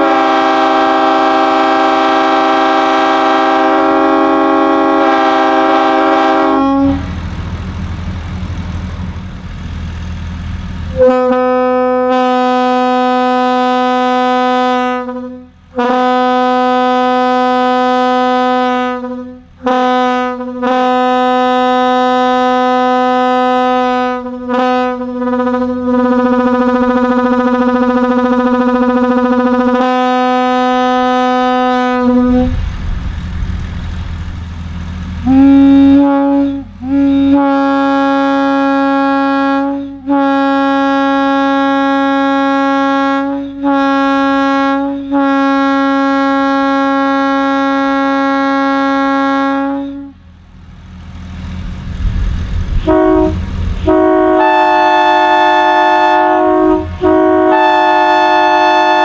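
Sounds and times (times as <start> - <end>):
locomotive air horn blasts: 0.0 - 7.4, 10.9 - 34.4, 35.0 - 50.4, 52.0 - 59.0
low rushing noise: 6.4 - 11.0, 31.5 - 35.9, 50.2 - 54.8.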